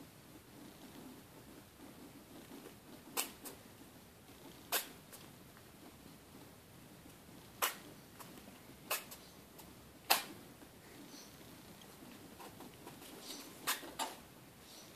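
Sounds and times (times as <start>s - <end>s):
rat sneezing: 4.7s - 5.0s, 8.9s - 9.2s.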